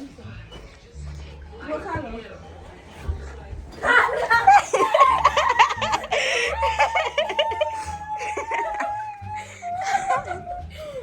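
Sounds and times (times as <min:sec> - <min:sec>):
people laughing and giggling: 0:02.8 - 0:11.0.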